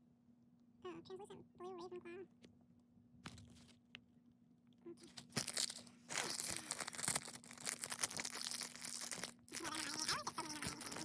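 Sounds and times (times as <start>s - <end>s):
packet crinkling and tearing: 5.1s - 11.0s.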